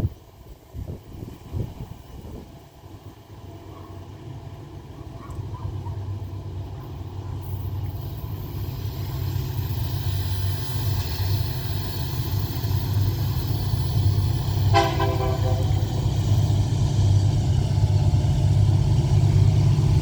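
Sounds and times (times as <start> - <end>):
locomotive engines rumbling: 0.2 - 20.0
locomotive horn: 14.7 - 16.1.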